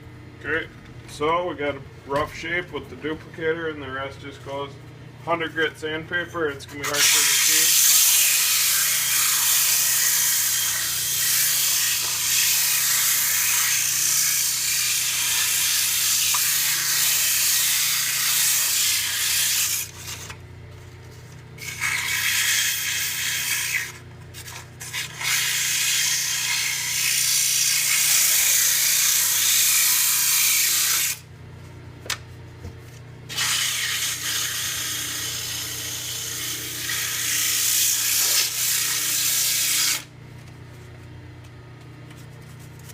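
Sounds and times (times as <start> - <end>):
sandpaper hissing on wood: 6.9 - 20.1, 21.6 - 23.9, 25.0 - 31.2, 33.3 - 35.5, 36.8 - 40.0.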